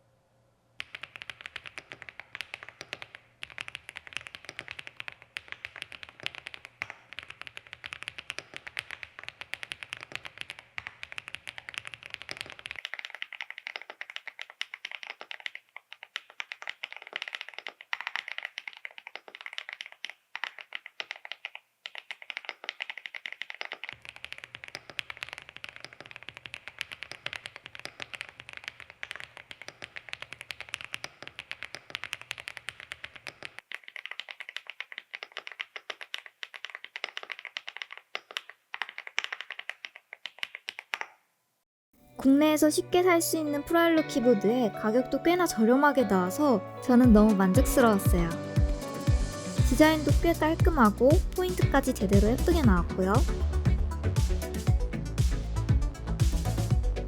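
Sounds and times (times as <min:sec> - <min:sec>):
fast mechanical keyboard typing: 0:00.8 - 0:41.1, 0:49.6 - 0:54.4.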